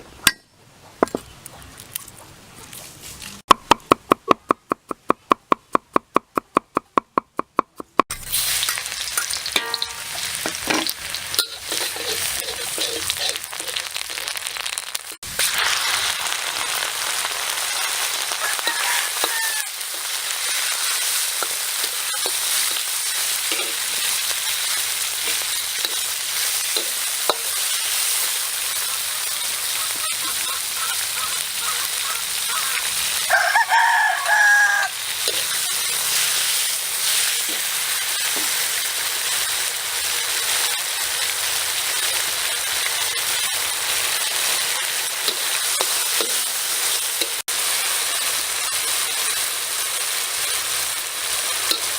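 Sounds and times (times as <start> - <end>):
food sizzling in a pan: 8.1 - 51.9
loud animal call: 28.8 - 33.0.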